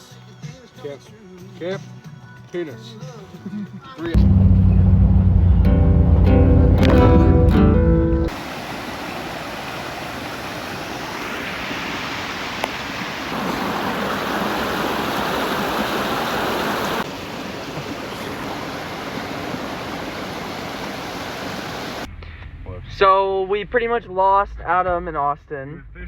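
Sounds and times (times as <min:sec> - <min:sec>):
rush of flowing water: 0:08.3 - 0:22.1.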